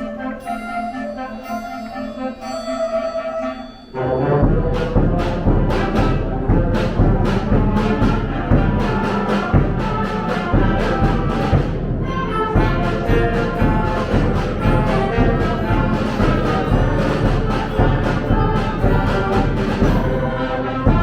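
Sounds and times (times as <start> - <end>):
orchestral march music: 0.0 - 21.0.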